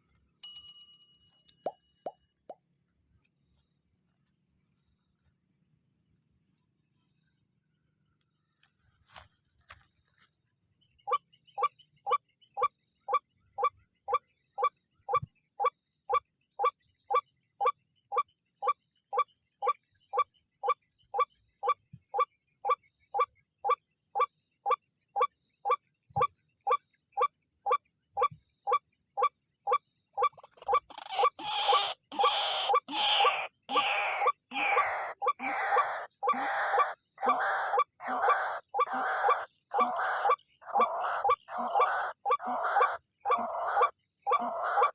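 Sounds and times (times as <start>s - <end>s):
harsh overlapping bird calls: 6.5s - 44.9s
waterhen calling: 30.2s - 44.9s.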